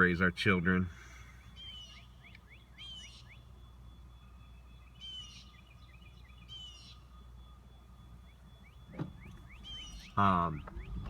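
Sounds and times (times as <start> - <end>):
faint low hum: 0.2 - 11.0
songbirds singing trilled phrases: 1.3 - 11.0
short rising bird chirps: 1.5 - 3.5, 4.5 - 7.5, 8.2 - 11.0.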